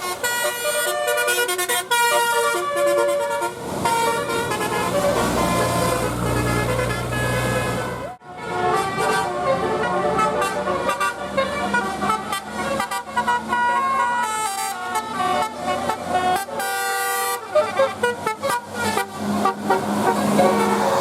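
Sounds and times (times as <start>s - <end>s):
bus musical horn playing a tune: 0.0s - 21.0s.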